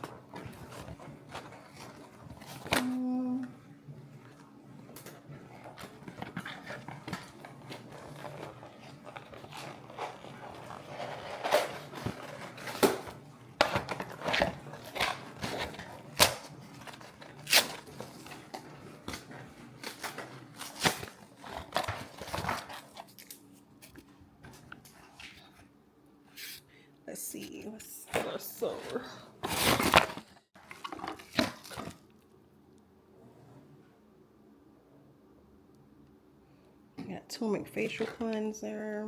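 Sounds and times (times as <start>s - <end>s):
packing material rustling: 0.0s - 3.4s, 4.2s - 25.5s, 28.6s - 32.1s.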